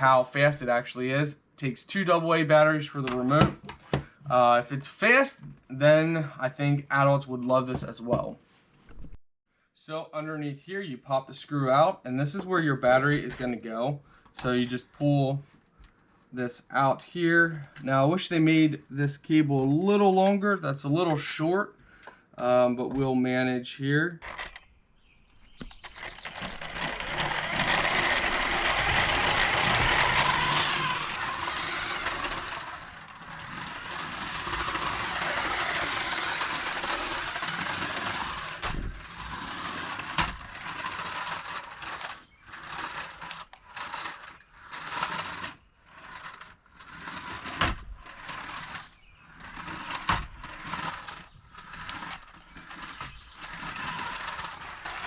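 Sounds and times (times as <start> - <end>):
toy car motor whirring: 24.2 - 24.7, 25.3 - 55.0
sharp clicks and knocks: 25.3 - 44.1
tyres rolling on ground: 25.3 - 55.0.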